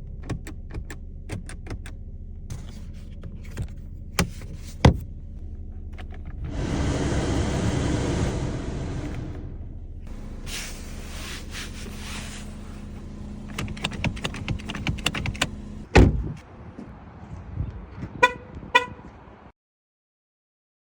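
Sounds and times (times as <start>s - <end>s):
car door shutting: 6.1s - 16.3s
steady hum: 6.4s - 15.8s
sharp clicks: 13.5s - 15.6s.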